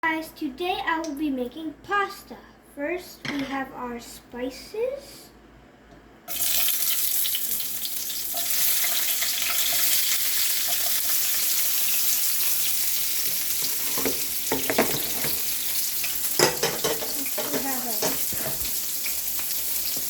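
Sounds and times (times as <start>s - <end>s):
food sizzling in hot oil: 6.3s - 20.0s
utensil knocking against pan: 16.4s - 18.6s.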